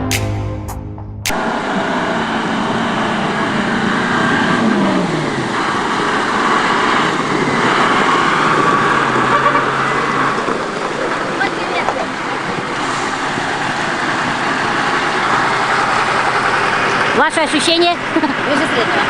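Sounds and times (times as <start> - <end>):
vehicle engine running: 0.0 - 19.0
road and wind noise: 1.3 - 19.0.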